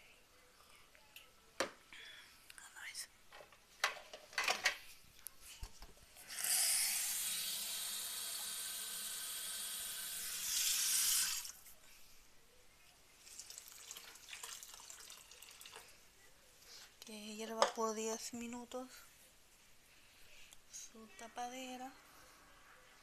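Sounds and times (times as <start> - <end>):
water running into a pot: 6.3 - 11.6, 13.2 - 15.9.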